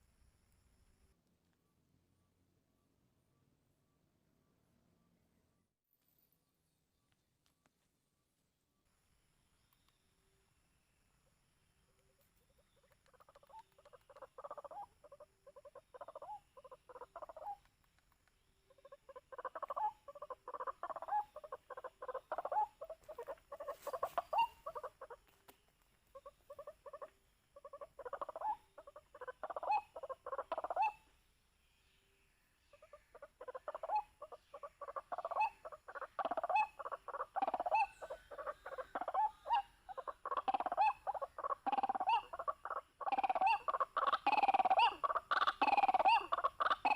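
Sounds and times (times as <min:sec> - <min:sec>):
waterhen calling rapid notes: 0:33.2 - 0:46.9.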